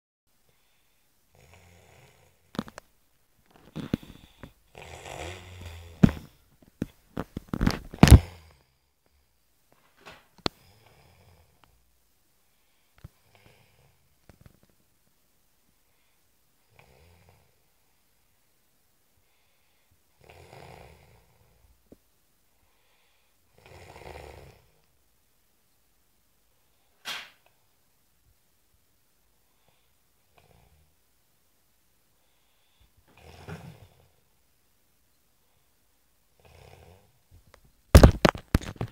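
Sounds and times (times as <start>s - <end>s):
buzzing snore: 1.3s - 2.5s, 3.8s - 6.4s, 8.0s - 8.7s, 16.7s - 17.6s, 20.2s - 21.6s, 23.5s - 24.8s, 33.1s - 34.2s, 36.4s - 37.2s
person snoring: 3.8s - 6.4s, 7.6s - 8.7s
sharp knocks and thumps: 38.0s - 38.9s.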